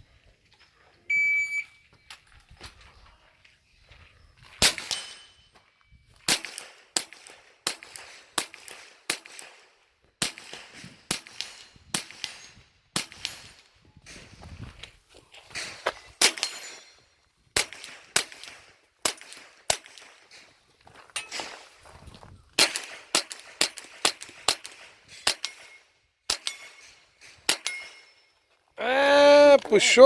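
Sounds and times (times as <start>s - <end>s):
shot timer beep: 1.1s - 1.8s.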